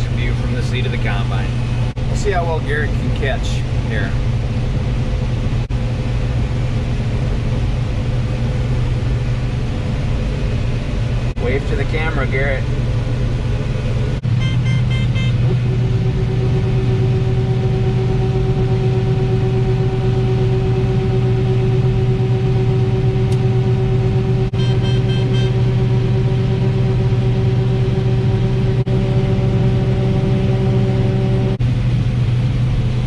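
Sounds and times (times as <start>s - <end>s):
combine harvester engine drone: 0.0s - 33.0s
quick electronic beeping: 14.4s - 15.4s.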